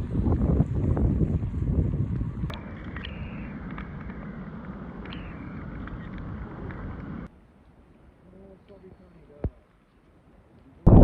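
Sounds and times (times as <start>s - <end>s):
wind buffeting microphone: 0.0s - 7.3s.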